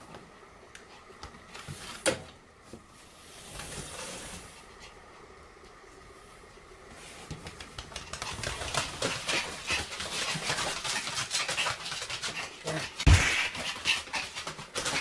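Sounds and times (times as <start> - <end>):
soft rustling hiss: 0.0 - 11.0
dogs scuffling: 6.9 - 15.0
sharp knock: 13.1 - 13.7.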